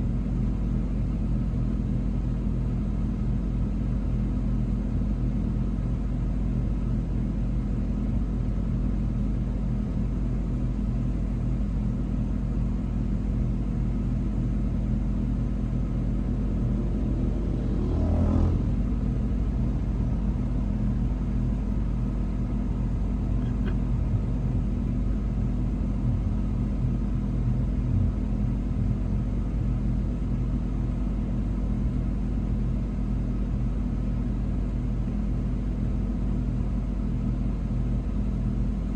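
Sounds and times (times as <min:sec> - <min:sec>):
train rumbling: 0:16.0 - 0:24.4.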